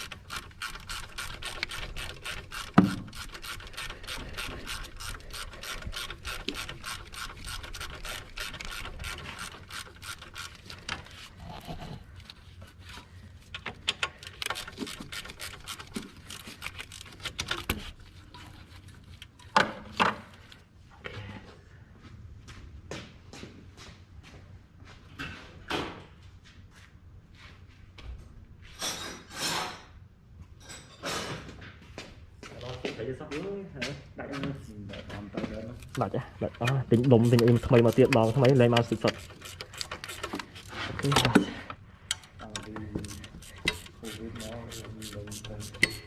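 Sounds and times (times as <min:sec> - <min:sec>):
ratchet wrench clicking: 0:00.0 - 0:11.3, 0:35.8 - 0:41.4, 0:42.1 - 0:46.0.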